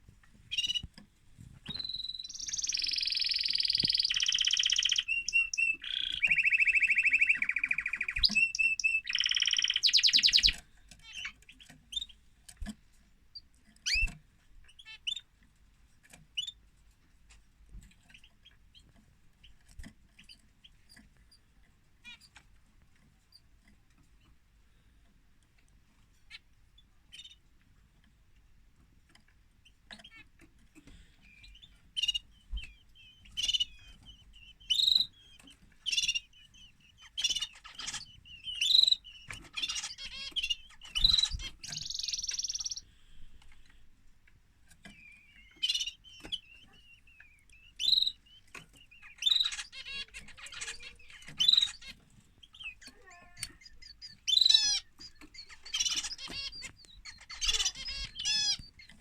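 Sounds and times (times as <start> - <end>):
canary singing: 0.5 - 1.0, 1.6 - 12.7, 13.3 - 15.4, 16.0 - 16.6, 26.1 - 27.5, 29.1 - 59.0.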